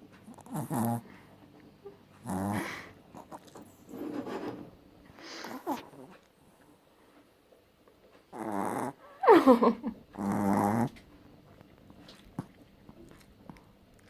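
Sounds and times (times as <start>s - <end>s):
dog snoring: 0.2s - 1.3s, 2.2s - 4.6s, 5.3s - 6.2s, 8.3s - 9.0s, 10.2s - 11.0s.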